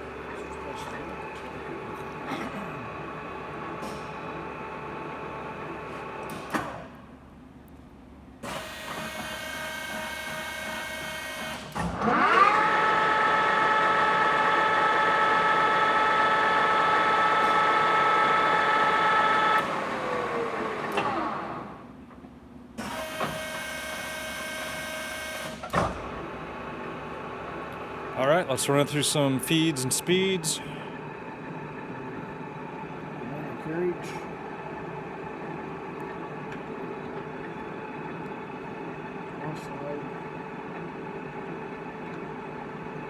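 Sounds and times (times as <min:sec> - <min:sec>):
lathe running with whine: 0:12.2 - 0:21.7, 0:26.3 - 0:43.0.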